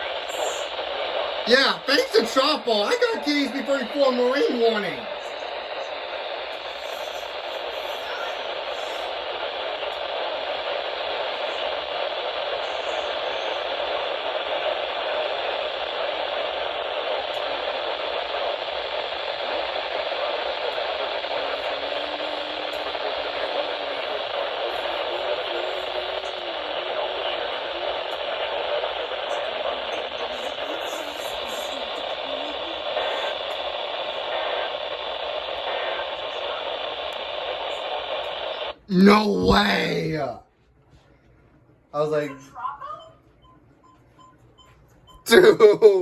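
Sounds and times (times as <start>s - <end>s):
faint voice broadcast: 0.0s - 0.8s, 1.5s - 9.6s, 21.2s - 33.5s, 38.9s - 40.4s, 45.3s - 46.0s
radio static hiss: 0.0s - 40.4s.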